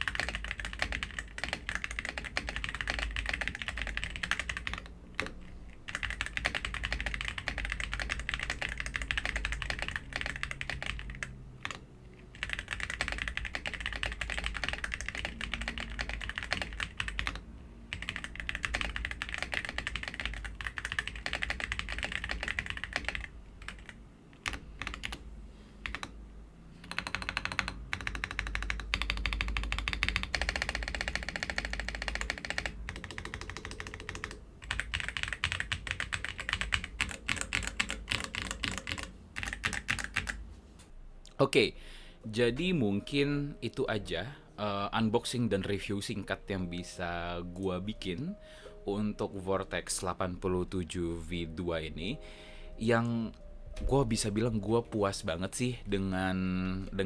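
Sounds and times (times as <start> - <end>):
mechanical keyboard typing: 0.0 - 26.2, 26.8 - 40.4.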